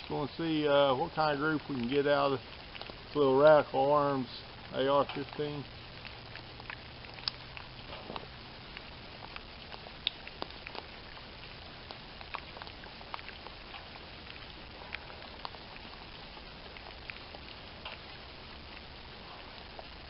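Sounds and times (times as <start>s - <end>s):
light rain pattering: 0.0s - 20.0s.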